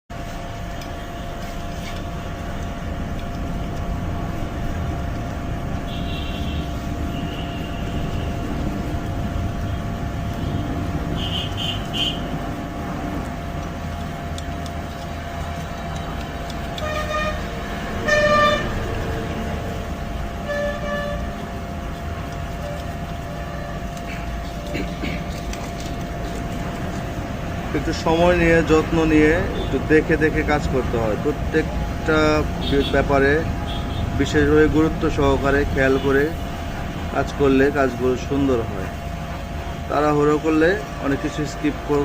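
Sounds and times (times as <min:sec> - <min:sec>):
traffic rumble: 0:00.1 - 0:42.0
vehicle horns honking: 0:05.8 - 0:08.6, 0:09.6 - 0:12.3, 0:16.8 - 0:19.0, 0:20.4 - 0:21.4, 0:22.6 - 0:25.2, 0:32.6 - 0:33.0, 0:33.6 - 0:34.2.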